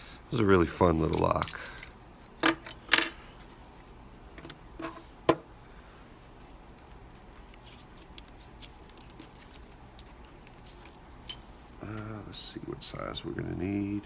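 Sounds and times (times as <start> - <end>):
metallic clicks of lock and tools: 8.0 - 11.5.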